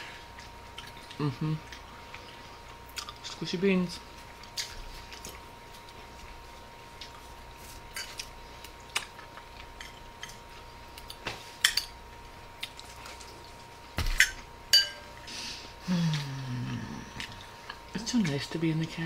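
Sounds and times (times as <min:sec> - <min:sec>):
spoons clinking against bowls: 0:14.2 - 0:15.2
person humming: 0:15.4 - 0:17.4.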